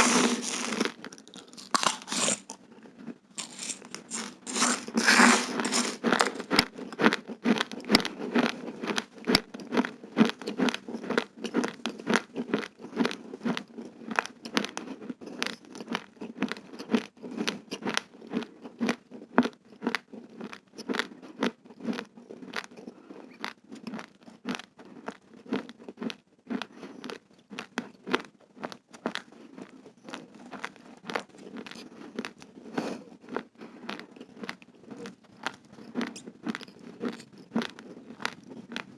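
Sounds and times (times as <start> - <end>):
person chewing crunchy rice: 0.0 - 2.6, 3.4 - 13.6, 29.1 - 38.9.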